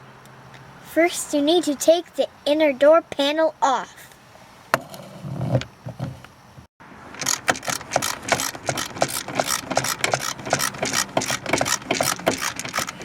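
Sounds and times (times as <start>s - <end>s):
screwdriver clicking and rattling: 7.2s - 13.0s.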